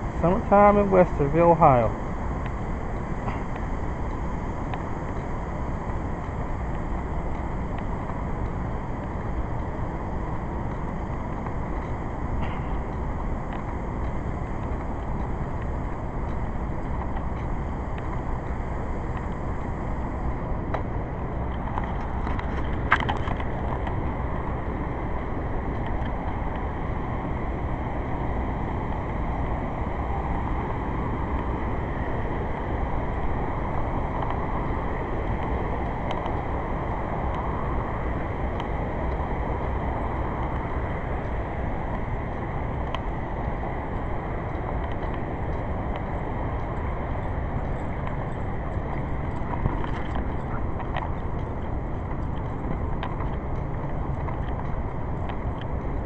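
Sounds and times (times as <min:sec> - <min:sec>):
vehicle rumble and road noise: 0:00.0 - 0:56.0.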